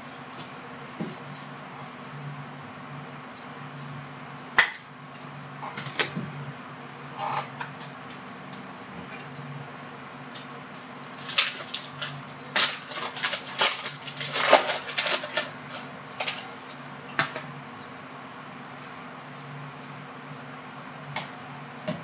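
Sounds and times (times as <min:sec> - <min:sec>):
faint steady hum: 0:00.0 - 0:22.0
cards crackling and clicking: 0:10.3 - 0:17.5.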